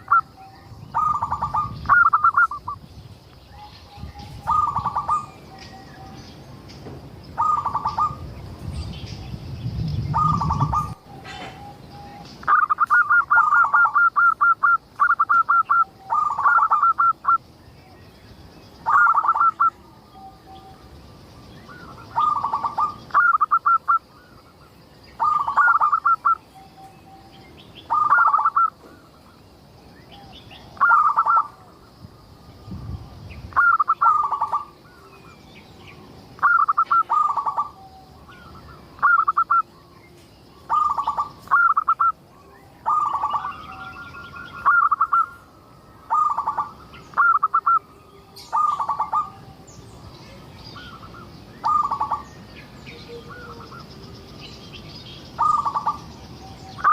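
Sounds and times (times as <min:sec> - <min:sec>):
dove cooing: 0:00.0 - 0:02.8, 0:03.9 - 0:06.2, 0:07.4 - 0:08.3, 0:10.1 - 0:17.4, 0:18.8 - 0:20.8, 0:21.7 - 0:24.1, 0:25.2 - 0:26.4, 0:27.9 - 0:28.9, 0:30.2 - 0:31.8, 0:33.5 - 0:35.4, 0:36.4 - 0:39.7, 0:40.6 - 0:42.1, 0:42.8 - 0:45.4, 0:46.1 - 0:49.7, 0:50.8 - 0:52.3, 0:52.9 - 0:54.1, 0:55.4 - 0:56.9
small birds chirping: 0:00.0 - 0:56.9.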